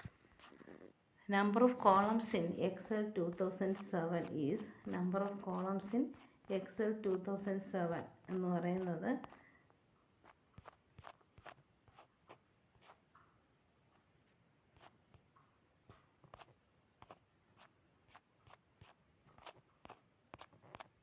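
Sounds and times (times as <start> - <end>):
faint clicks and taps: 1.4 - 13.3, 18.5 - 21.0.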